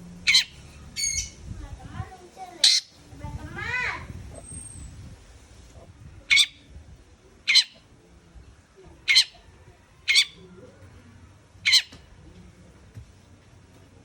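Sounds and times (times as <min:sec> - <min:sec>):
bird giving harsh calls: 0:00.2 - 0:01.4, 0:02.6 - 0:03.0, 0:06.3 - 0:06.7, 0:07.5 - 0:07.8, 0:09.1 - 0:09.4, 0:10.1 - 0:10.4, 0:11.6 - 0:12.0.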